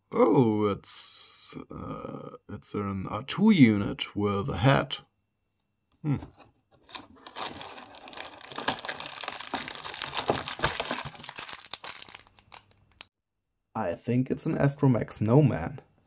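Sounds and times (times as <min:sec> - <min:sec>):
plastic bag crinkling: 0:06.8 - 0:13.1.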